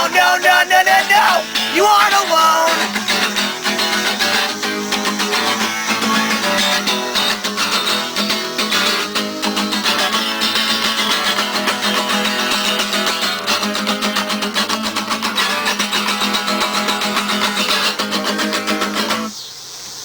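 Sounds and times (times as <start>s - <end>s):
acoustic guitar strummed fast: 0.0s - 19.3s.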